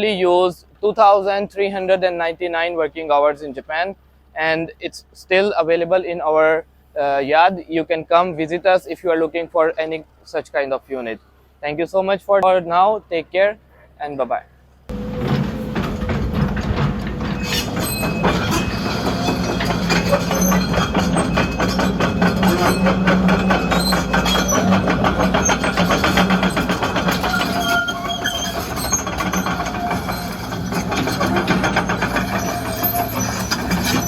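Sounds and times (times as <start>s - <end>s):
excavator diesel drone: 14.9s - 34.0s
rapid metallic clatter: 14.9s - 34.0s.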